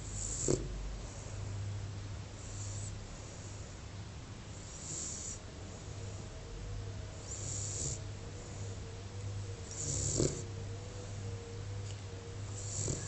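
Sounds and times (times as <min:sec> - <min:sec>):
dog snorting: 0:00.0 - 0:01.3, 0:04.6 - 0:05.4, 0:07.2 - 0:08.1, 0:09.7 - 0:10.6, 0:12.6 - 0:13.0
dog snoring: 0:00.0 - 0:01.5, 0:02.4 - 0:03.8, 0:04.5 - 0:06.2, 0:07.1 - 0:08.9, 0:09.6 - 0:11.2, 0:12.4 - 0:13.0.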